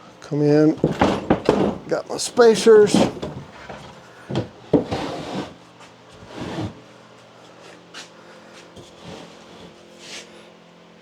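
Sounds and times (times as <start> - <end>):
sawmill engine idling: 1.0 - 3.6.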